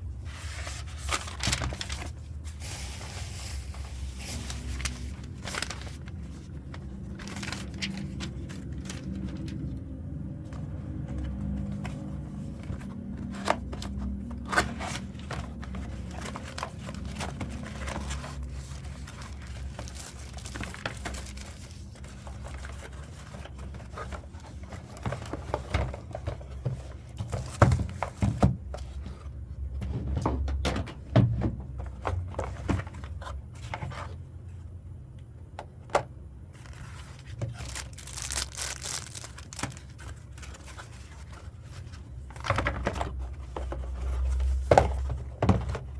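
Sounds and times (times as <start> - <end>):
packaging crinkling and rustling: 0.3 - 28.5, 36.5 - 45.9.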